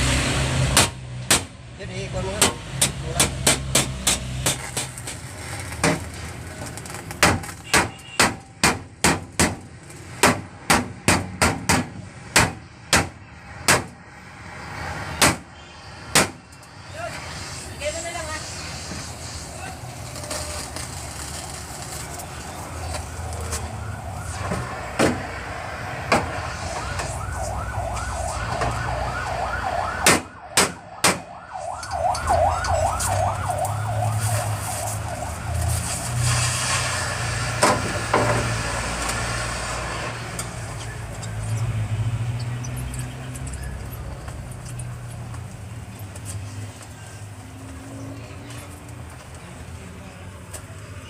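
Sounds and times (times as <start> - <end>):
siren yelping: 22.7 - 36.2.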